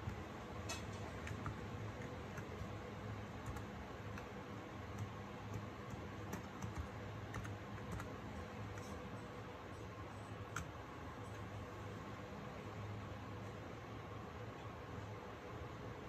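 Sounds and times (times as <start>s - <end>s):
keyboard typing: 0.0s - 9.1s, 10.4s - 10.8s.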